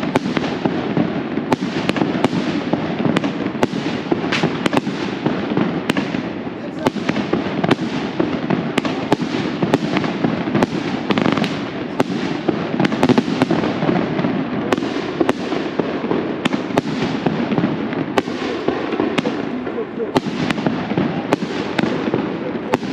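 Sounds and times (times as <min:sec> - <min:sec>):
firecrackers banging: 0:00.0 - 0:22.9
constant din: 0:17.5 - 0:22.9.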